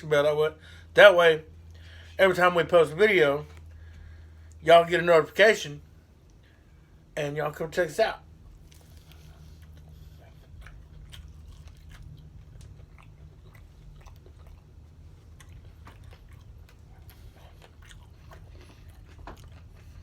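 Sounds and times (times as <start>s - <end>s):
steady low hum: 0.0s - 20.0s
person chewing with crunches: 8.3s - 20.0s.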